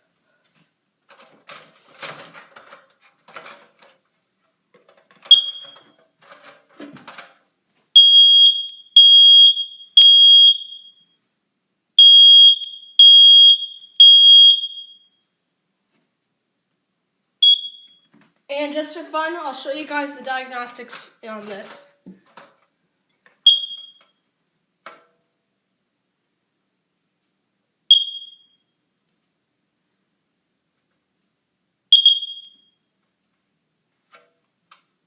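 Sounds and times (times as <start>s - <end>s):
smoke alarm beeping: 5.3s - 5.9s, 8.0s - 11.2s, 12.0s - 15.4s, 17.4s - 18.1s, 23.4s - 24.2s, 27.9s - 28.8s, 31.9s - 32.9s
smoke alarm chirp: 5.3s - 5.9s, 8.0s - 11.2s, 12.0s - 15.3s, 17.4s - 18.1s, 23.4s - 24.2s, 27.9s - 28.8s, 31.9s - 32.9s.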